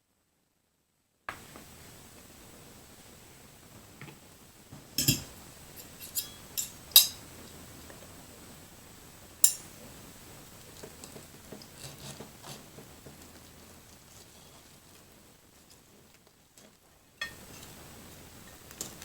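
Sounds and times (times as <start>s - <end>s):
cutlery clinking on a plate: 5.0s - 7.2s, 9.4s - 9.7s, 17.2s - 17.5s.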